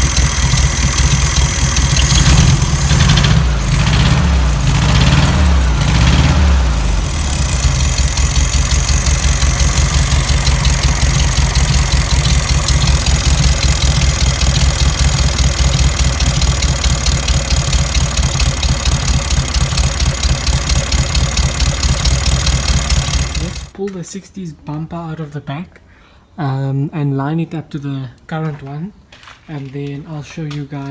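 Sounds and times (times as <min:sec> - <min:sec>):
car engine idling: 0:00.0 - 0:23.7.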